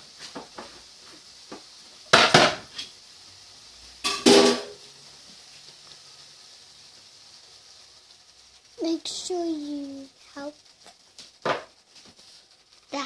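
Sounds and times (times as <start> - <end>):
utensils clanking on cooking pot: 4.0 - 4.8.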